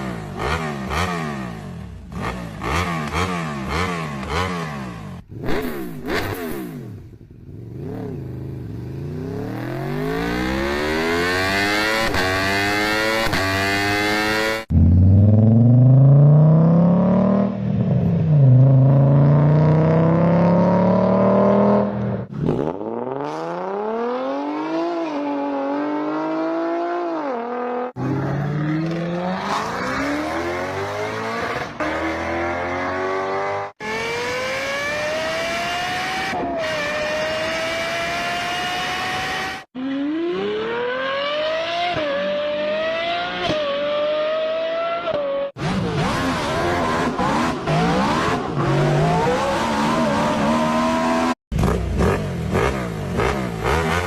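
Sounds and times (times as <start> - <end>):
car engines accelerating: 7.8 - 54.0.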